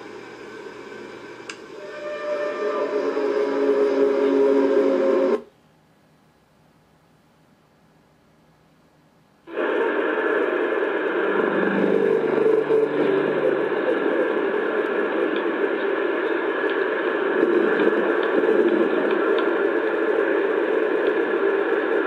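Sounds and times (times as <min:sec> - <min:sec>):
steady noisy roar: 0:09.5 - 0:22.0
low moaning tone: 0:11.3 - 0:14.6.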